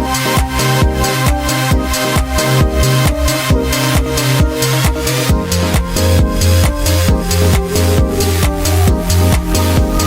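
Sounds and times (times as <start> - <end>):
bass line: 0.0 - 10.0
kick drum beat: 0.0 - 10.0
sustained synth notes: 2.6 - 10.0.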